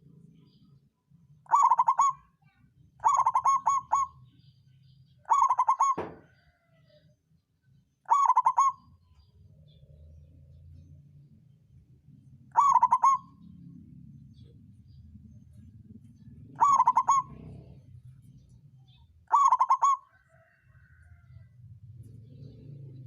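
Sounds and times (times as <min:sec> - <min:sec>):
dove cooing: 0:01.4 - 0:02.3, 0:03.0 - 0:04.3, 0:05.2 - 0:06.7, 0:08.1 - 0:09.3, 0:12.5 - 0:18.5, 0:19.3 - 0:21.4.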